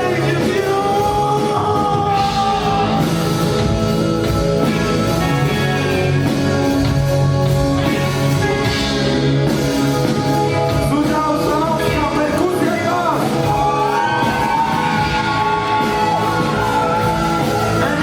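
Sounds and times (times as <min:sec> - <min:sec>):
person singing: 0:00.0 - 0:03.6, 0:10.9 - 0:18.0
live rock band playing: 0:00.0 - 0:18.0.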